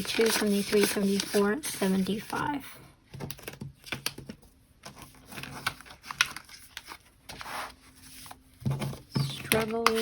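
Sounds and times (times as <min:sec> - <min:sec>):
paper bills rustling: 0:00.0 - 0:02.5.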